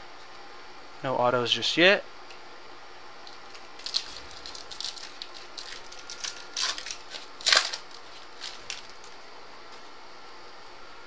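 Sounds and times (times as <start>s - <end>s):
trading cards rustling and flicking: 3.3s - 9.9s.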